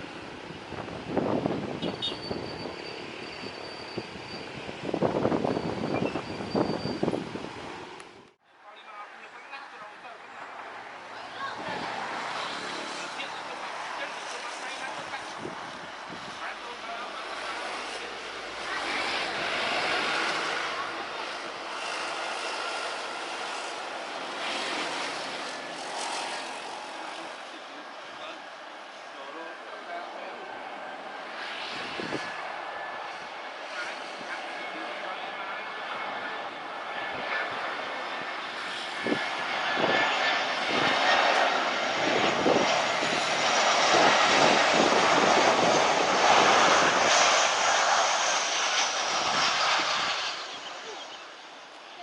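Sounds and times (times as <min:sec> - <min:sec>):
wind buffeting microphone: 0:00.0 - 0:07.9, 0:14.8 - 0:16.4, 0:31.5 - 0:35.0, 0:36.7 - 0:50.8
jet engines roaring: 0:00.0 - 0:52.0.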